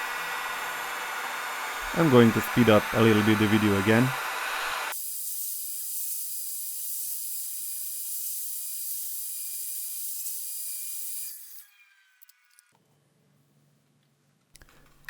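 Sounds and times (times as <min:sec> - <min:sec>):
heat gun hissing: 0:00.0 - 0:11.4.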